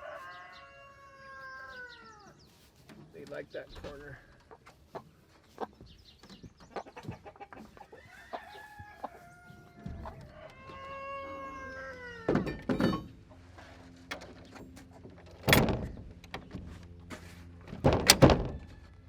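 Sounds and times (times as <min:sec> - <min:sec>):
rooster crowing: 0:00.0 - 0:02.3, 0:08.0 - 0:12.6
chickens clucking: 0:01.3 - 0:12.7.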